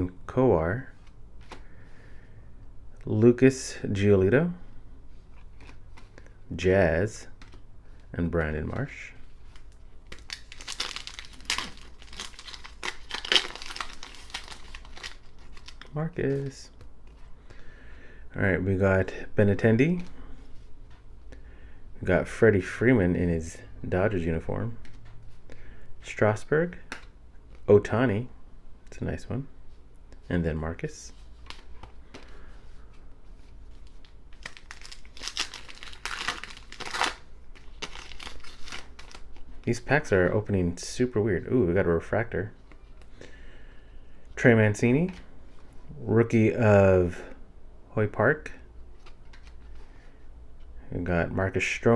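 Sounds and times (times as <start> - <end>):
foil wrapper crinkling: 9.6 - 15.9, 33.8 - 39.4.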